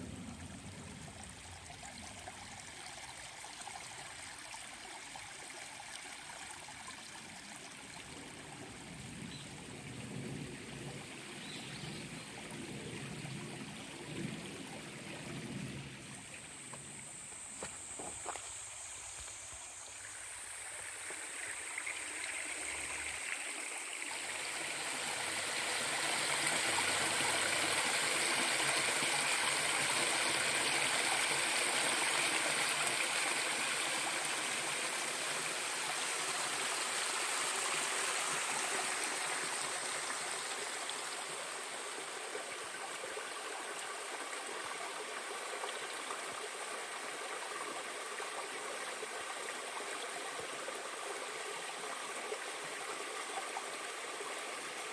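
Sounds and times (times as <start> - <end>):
stream rushing over rocks: 13.2 - 54.9.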